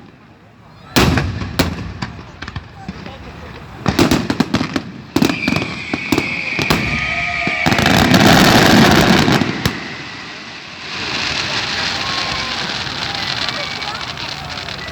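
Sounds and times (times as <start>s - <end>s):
fireworks bangs: 0.0s - 14.9s
fireworks crackling: 0.0s - 14.9s
high whistle: 5.2s - 12.8s.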